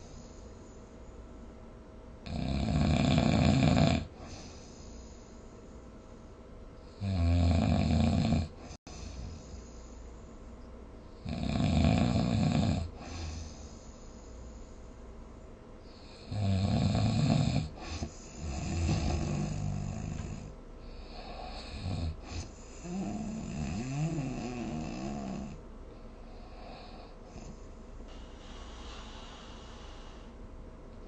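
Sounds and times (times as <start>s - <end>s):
person snoring: 2.2s - 4.7s, 7.0s - 9.6s, 11.2s - 13.7s, 16.0s - 25.6s.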